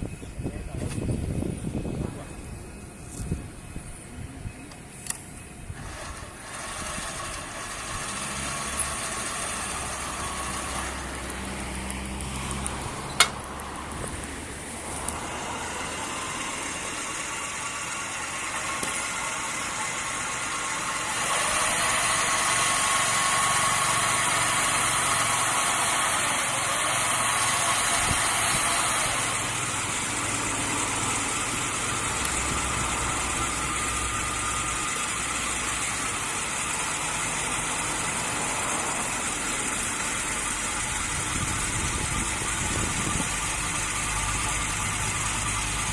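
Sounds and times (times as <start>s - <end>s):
drilling motor whining: 0.0s - 45.9s
sharp click: 4.7s - 5.3s, 11.1s - 15.2s.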